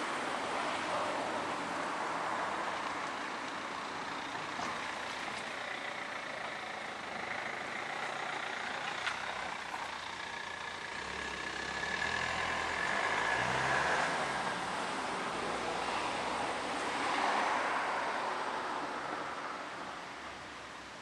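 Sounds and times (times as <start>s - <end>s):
traffic noise: 0.0s - 21.0s
wind: 0.0s - 21.0s.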